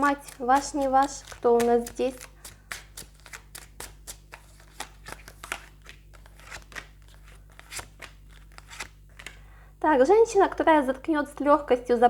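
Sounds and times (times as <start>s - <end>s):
cards being shuffled: 0.0s - 9.4s.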